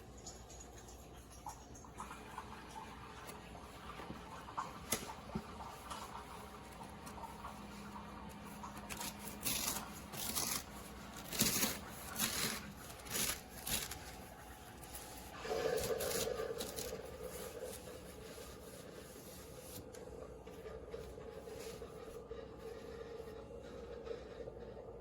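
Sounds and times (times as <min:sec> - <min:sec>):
fabric or packaging rustling: 0:08.8 - 0:19.9.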